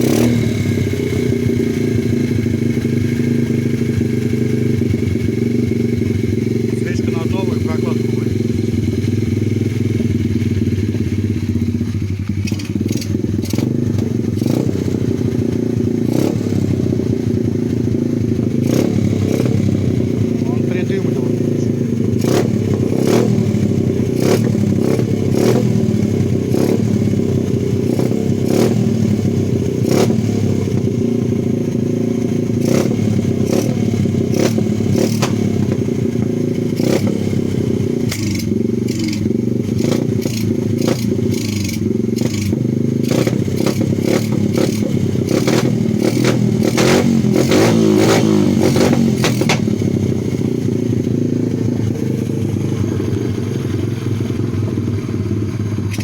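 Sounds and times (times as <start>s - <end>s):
motorcycle engine running rough: 0.0s - 56.0s
sharp engine clicks and pops: 12.4s - 14.6s, 34.3s - 37.3s, 38.1s - 49.8s.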